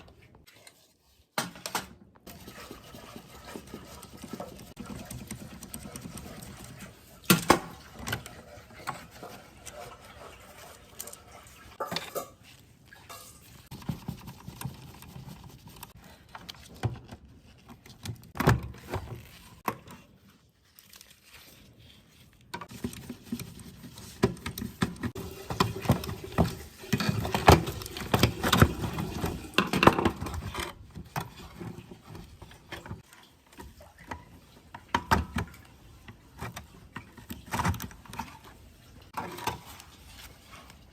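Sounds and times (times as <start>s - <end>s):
tools and parts clattering: 11.0s - 13.7s.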